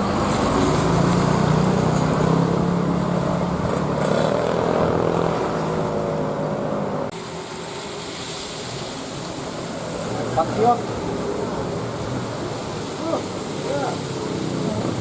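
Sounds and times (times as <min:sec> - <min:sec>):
bus engine running: 0:00.0 - 0:07.9.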